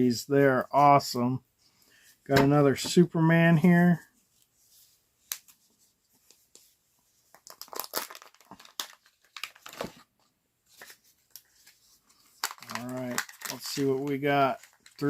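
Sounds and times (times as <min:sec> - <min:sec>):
foil wrapper tearing and crinkling: 0:07.4 - 0:09.9, 0:12.4 - 0:15.0.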